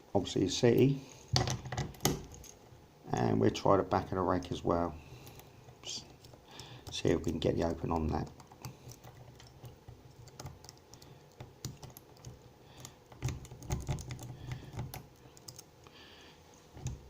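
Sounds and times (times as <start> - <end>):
lock pick clicking and scraping: 5.1 - 15.7.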